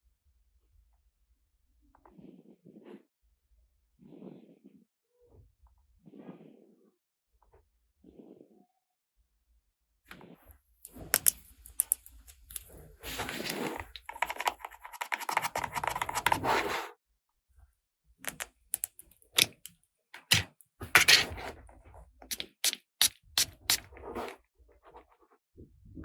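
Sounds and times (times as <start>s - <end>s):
toy pieces clicking: 11.0s - 16.4s, 18.3s - 21.2s, 22.3s - 23.8s.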